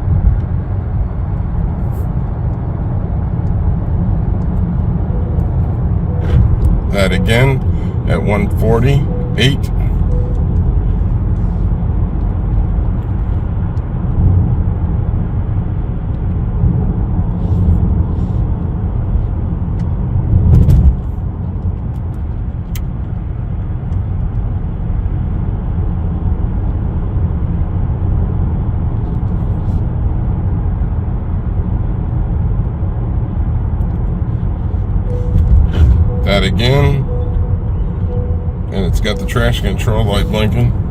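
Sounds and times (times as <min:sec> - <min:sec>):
in-car road rumble: 0:00.0 - 0:40.9
low thump: 0:35.3 - 0:36.2.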